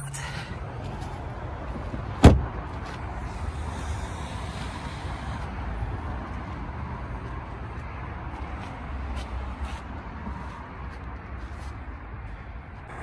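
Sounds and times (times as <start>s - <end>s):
car door shutting: 2.2s - 2.5s.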